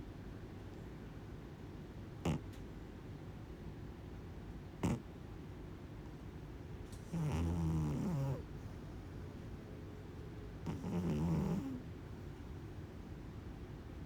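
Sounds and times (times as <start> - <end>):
kitten snoring: 2.2 - 2.4, 4.8 - 5.0, 7.0 - 8.8, 10.6 - 11.9.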